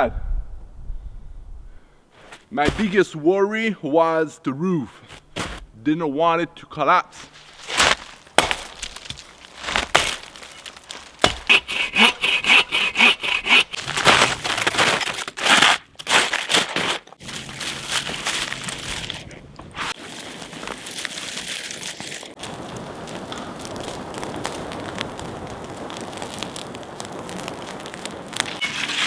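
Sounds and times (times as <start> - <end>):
rough rustle: 2.1 - 3.2, 4.9 - 5.8, 7.1 - 11.8, 13.8 - 29.0
scraping strokes: 4.9 - 5.8, 7.1 - 19.1, 28.4 - 29.0.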